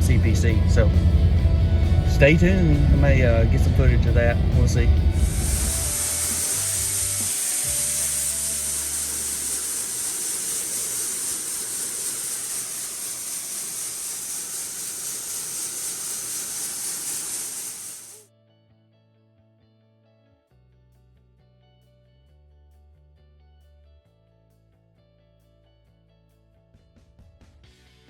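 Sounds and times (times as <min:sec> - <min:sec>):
low hum: 0:00.0 - 0:18.2
high-pitched hiss: 0:04.7 - 0:18.2.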